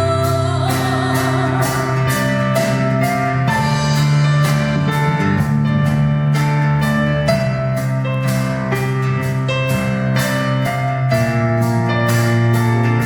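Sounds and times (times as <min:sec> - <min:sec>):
drum kit beat: 0:00.0 - 0:13.0
live band playing: 0:00.0 - 0:13.0.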